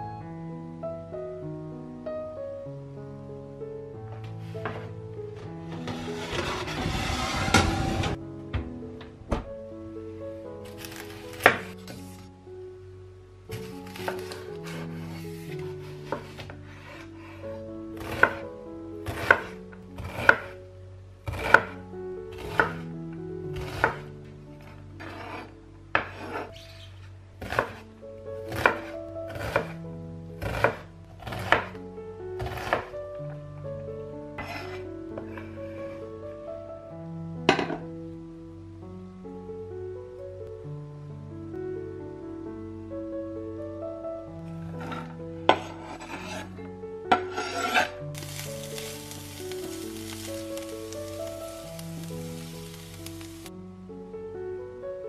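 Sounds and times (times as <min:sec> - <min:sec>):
background music sustained notes: 0:00.0 - 0:55.0
short rasping scrapes: 0:05.7 - 0:08.2, 0:44.7 - 0:46.5, 0:47.3 - 0:48.0
steady hiss: 0:48.1 - 0:53.6.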